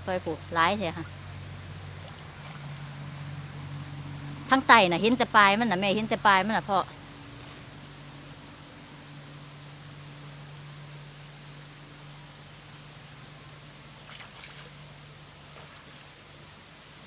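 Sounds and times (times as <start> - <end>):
insects chirring: 0.0 - 17.0
faint rustles: 6.9 - 8.9.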